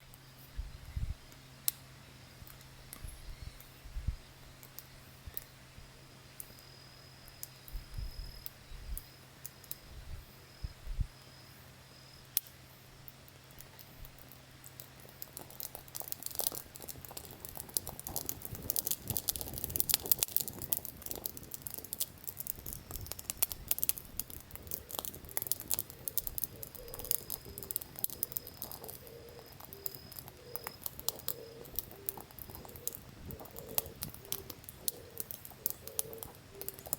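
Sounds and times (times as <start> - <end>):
campfire crackling and popping: 0.8 - 3.8, 4.4 - 9.9, 12.3 - 36.9.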